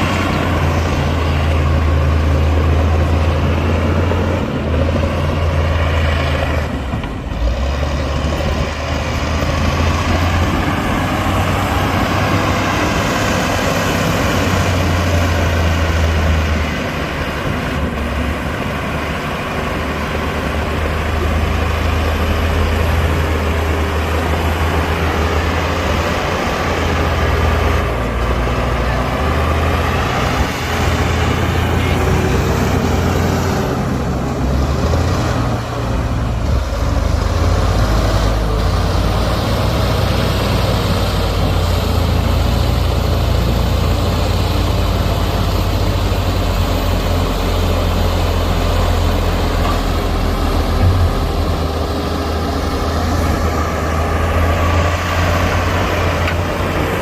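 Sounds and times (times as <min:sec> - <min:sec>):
heavy diesel machinery running: 0:00.0 - 0:57.0.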